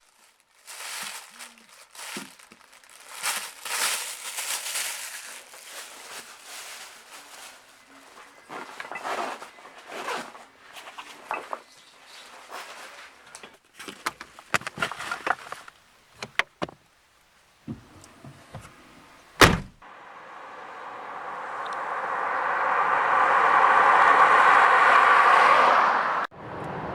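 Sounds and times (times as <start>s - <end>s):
rustling and handling noises: 0.0s - 19.8s
loud thud: 19.4s - 19.8s.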